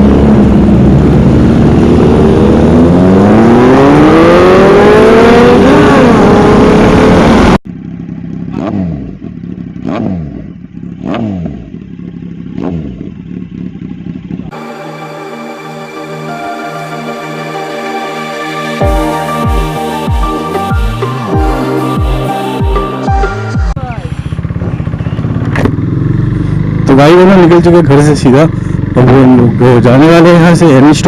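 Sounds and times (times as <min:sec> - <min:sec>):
motorcycle engine revving: 0:00.0 - 0:14.6, 0:23.7 - 0:30.8
electronic music: 0:14.5 - 0:23.8
sharp hits with falling tone: 0:14.5 - 0:23.8.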